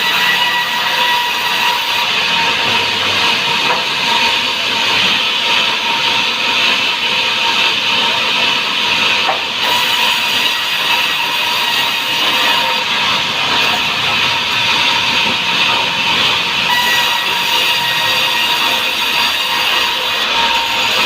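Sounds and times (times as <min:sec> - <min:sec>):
saw blade cutting log: 0:00.0 - 0:21.0.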